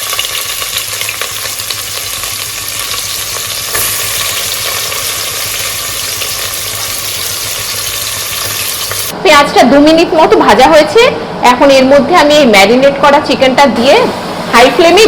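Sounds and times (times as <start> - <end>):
onions sizzling in a pan: 0.0 - 9.1.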